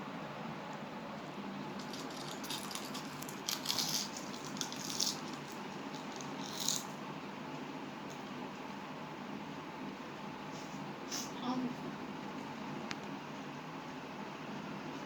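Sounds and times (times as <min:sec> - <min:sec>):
snack chips crackling: 0:01.8 - 0:06.9.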